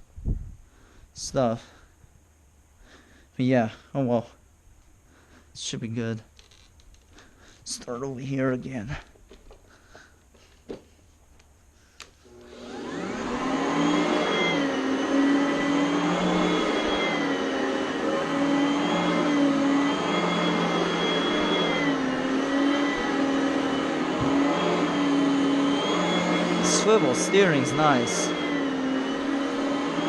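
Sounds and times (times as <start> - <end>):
vacuum motor whining: 12.2 - 30.0.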